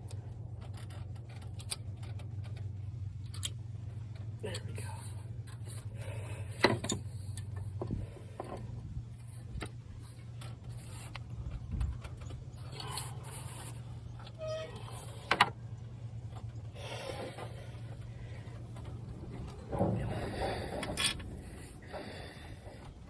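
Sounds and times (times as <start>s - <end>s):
metal clicks and scrapes: 0.0s - 6.0s, 6.6s - 15.6s
steady low hum: 0.0s - 23.0s.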